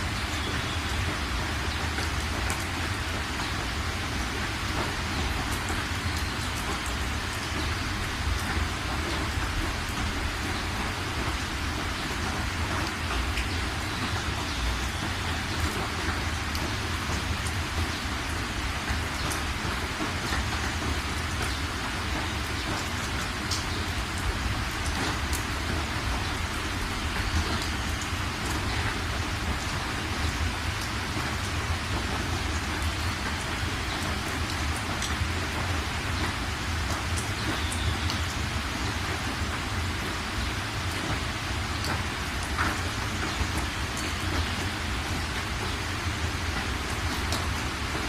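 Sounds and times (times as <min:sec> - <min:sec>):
raindrops ticking: 0:00.0 - 0:48.0
steady rain hiss: 0:00.0 - 0:48.0.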